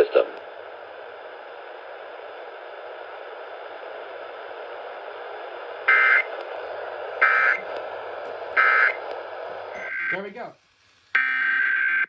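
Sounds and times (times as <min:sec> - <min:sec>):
radio static hiss: 0:00.0 - 0:12.0
two-tone data signal burst: 0:09.8 - 0:12.0.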